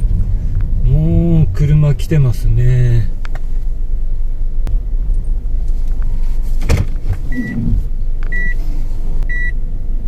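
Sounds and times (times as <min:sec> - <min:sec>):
engine and tyre rumble: 0:00.0 - 0:10.0
thump: 0:06.6 - 0:07.2
car warning beeps: 0:07.3 - 0:09.6.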